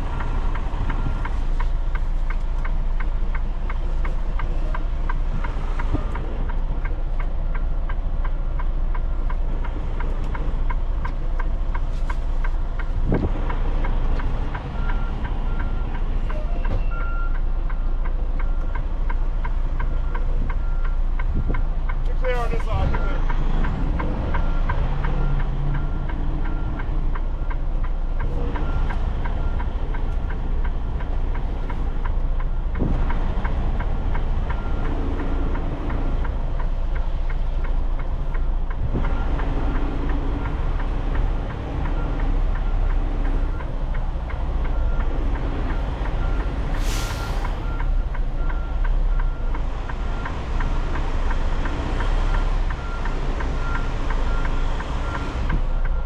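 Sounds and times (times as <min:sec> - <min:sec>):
truck diesel engine running: 0:00.0 - 0:56.0
air brake hiss: 0:46.8 - 0:47.6.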